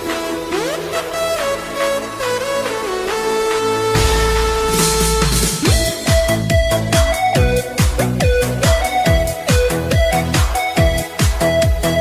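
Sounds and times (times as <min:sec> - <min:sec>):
synth melody: 0:00.0 - 0:12.0
thumping kick drum: 0:03.9 - 0:12.0.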